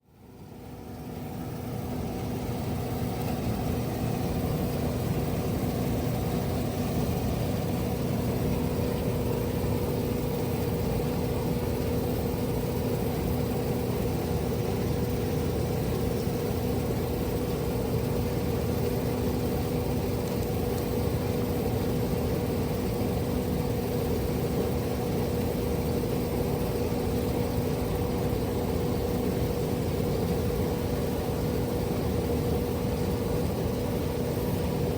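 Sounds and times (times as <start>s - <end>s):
machine humming: 0.0s - 34.9s.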